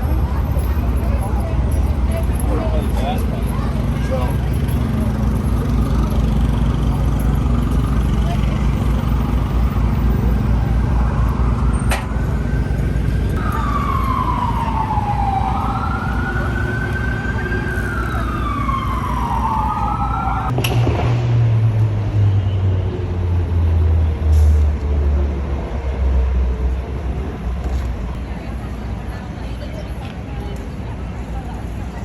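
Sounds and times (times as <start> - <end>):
heavy vehicle engine drone: 0.0 - 32.0
street traffic rumble: 0.0 - 32.0
emergency siren wailing: 9.2 - 20.6.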